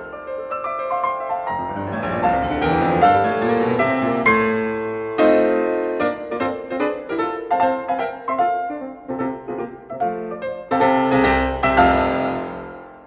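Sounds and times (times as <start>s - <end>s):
piano music: 0.0s - 13.0s.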